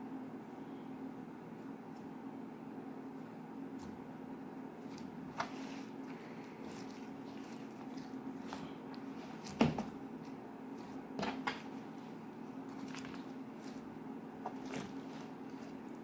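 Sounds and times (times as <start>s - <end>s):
steady low hum: 0.0s - 16.0s
slime squishing by hand: 4.8s - 16.0s.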